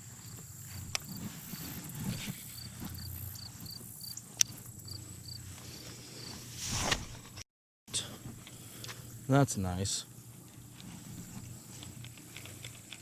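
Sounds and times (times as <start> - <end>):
insect chirping: 0.0 - 6.4
brief whoosh: 6.6 - 7.2.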